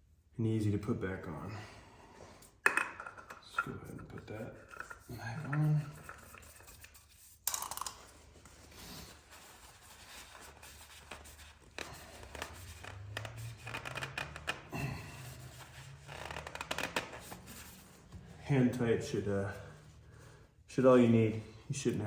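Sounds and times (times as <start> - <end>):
soft rubbing: 8.2 - 22.0.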